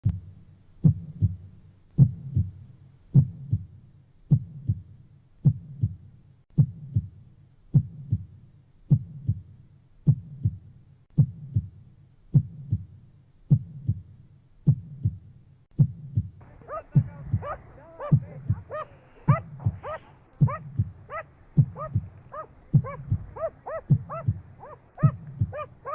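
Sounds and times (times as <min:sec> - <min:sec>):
human heartbeat: 0:15.8 - 0:25.9.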